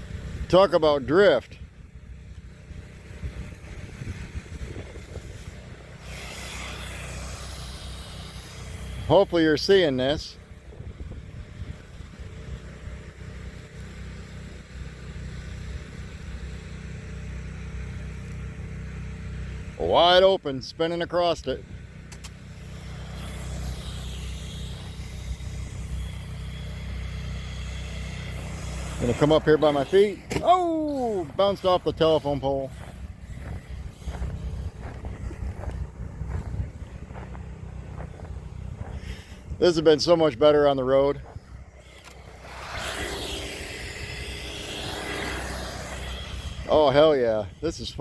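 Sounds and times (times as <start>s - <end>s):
rc car motor and spinning tyres: 0.0s - 48.0s
wind rumble on microphone: 1.5s - 9.1s, 10.1s - 13.0s, 23.2s - 46.7s.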